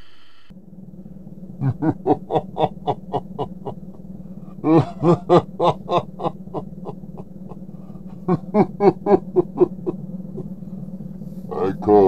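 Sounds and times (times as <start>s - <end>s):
steady low hum: 0.0s - 12.0s
man laughing: 1.6s - 10.6s, 11.5s - 12.0s.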